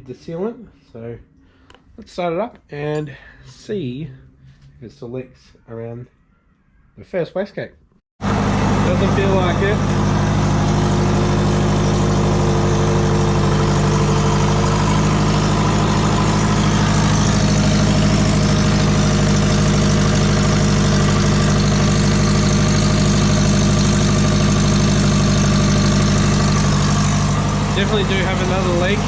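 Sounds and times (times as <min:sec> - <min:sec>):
car engine idling: 0:08.2 - 0:29.0
exhaust leak: 0:08.2 - 0:29.0.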